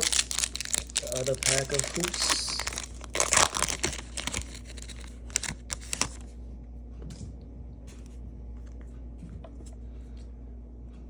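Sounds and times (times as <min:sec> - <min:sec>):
cards clicking and rustling: 0:00.0 - 0:06.3
foil wrapper crinkling: 0:00.0 - 0:06.3.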